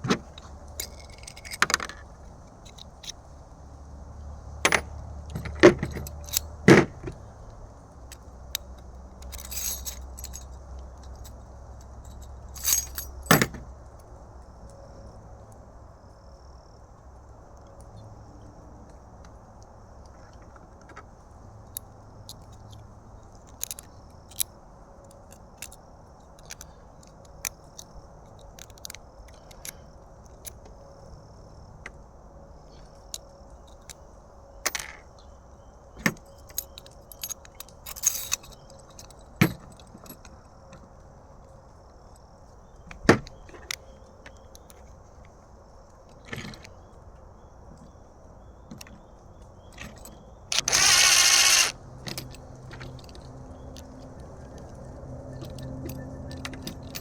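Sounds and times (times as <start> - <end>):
plastic parts clicking and tapping: 49.8 - 53.1.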